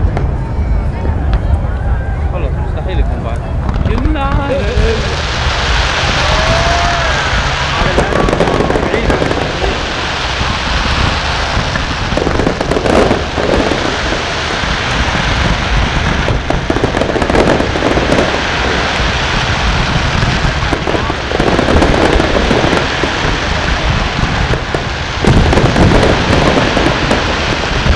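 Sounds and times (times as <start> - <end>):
fireworks bangs and crackling: 0.0 - 2.0, 2.6 - 27.9.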